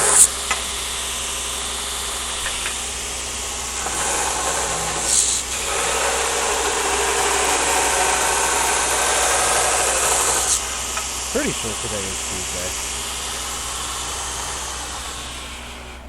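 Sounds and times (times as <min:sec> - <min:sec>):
steady low hum: 0:10.1 - 0:16.0.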